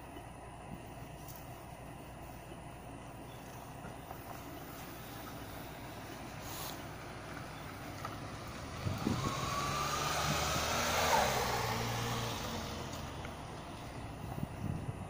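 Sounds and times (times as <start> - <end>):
vehicle engine passing by: 4.6 - 15.0.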